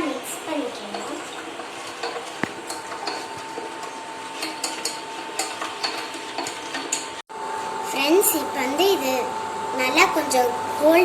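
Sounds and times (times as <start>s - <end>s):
utensil scraping and tapping pan: 0.9s - 7.1s.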